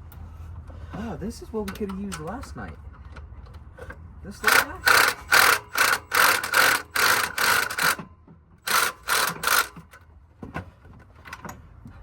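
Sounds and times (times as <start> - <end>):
impact wrench bursts: 4.3 - 10.0.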